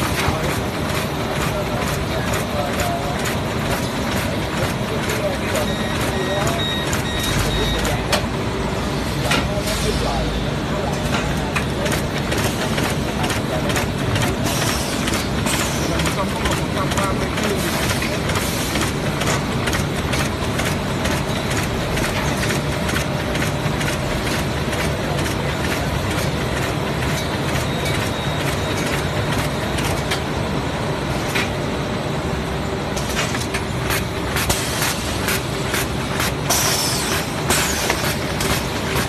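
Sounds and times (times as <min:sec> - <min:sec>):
bag cutting machine running: 0:00.0 - 0:39.0
rapid regular cutting clicks: 0:00.4 - 0:06.2, 0:15.0 - 0:30.0.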